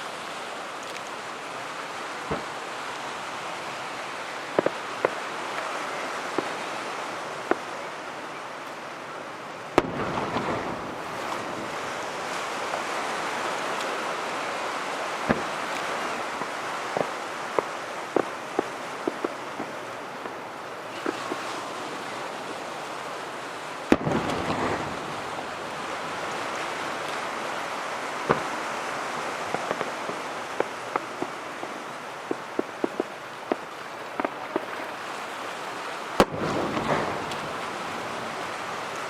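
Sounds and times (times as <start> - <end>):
surf rushing: 0.0 - 39.0
fireworks bursting: 2.2 - 2.8, 4.5 - 5.3, 9.7 - 14.0, 15.0 - 22.2, 23.8 - 35.0, 35.6 - 39.0.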